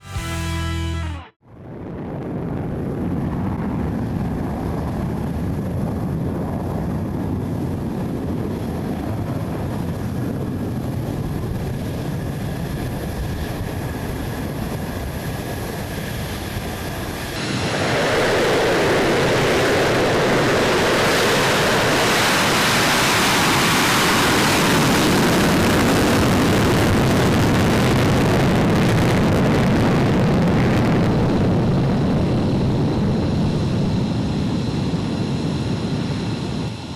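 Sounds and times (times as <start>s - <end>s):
jet engine roar: 15.8s - 36.9s.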